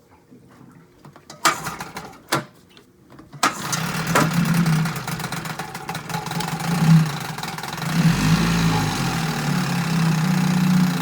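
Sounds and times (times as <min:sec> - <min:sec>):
outboard motor starting and running: 0:03.4 - 0:11.0.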